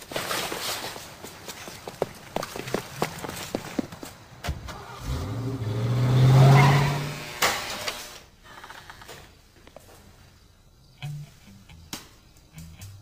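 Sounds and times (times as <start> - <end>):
car engine accelerating: 4.7 - 7.5.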